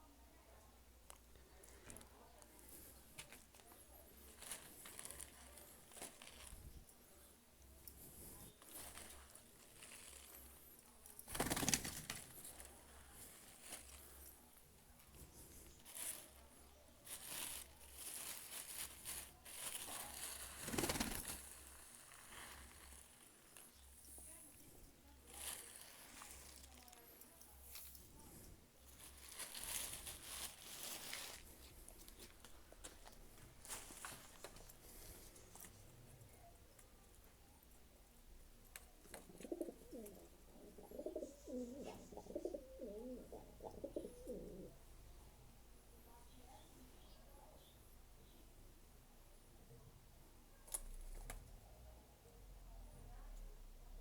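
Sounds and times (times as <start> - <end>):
pigeon wings flurry: 11.3 - 12.5, 19.8 - 21.4
pigeons pecking at feed: 38.9 - 44.7.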